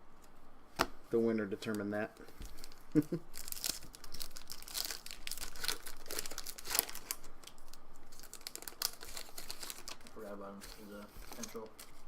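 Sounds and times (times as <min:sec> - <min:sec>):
wrapper crinkling and tearing: 0:02.4 - 0:12.0.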